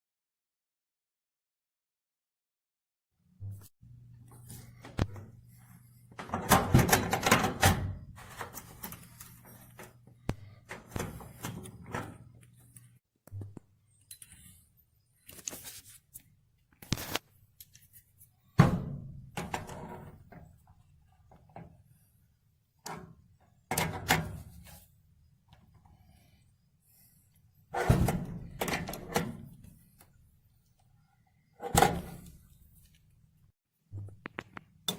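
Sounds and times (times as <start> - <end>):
knocks and thuds: 18.6 - 19.4.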